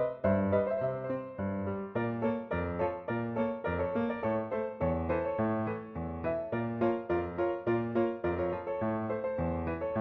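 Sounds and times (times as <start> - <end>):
piano background music: 0.0 - 10.0.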